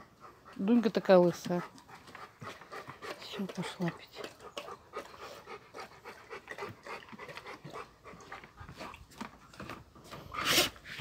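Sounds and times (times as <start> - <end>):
dog panting: 0.0 - 10.8.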